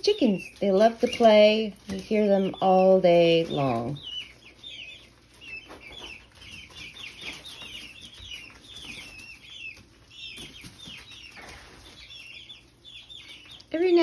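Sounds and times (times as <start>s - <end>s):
chicks peeping: 0.0s - 14.0s.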